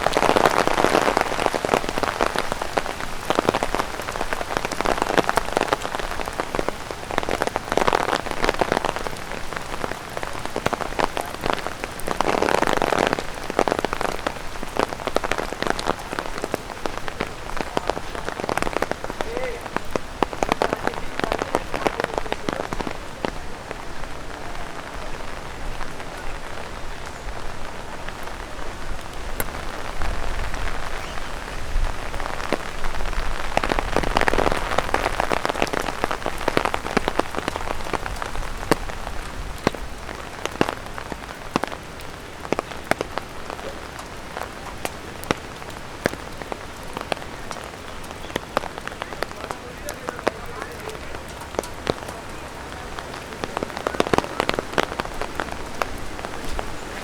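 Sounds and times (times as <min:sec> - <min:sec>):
rain pattering on an umbrella: 0:00.0 - 0:57.0.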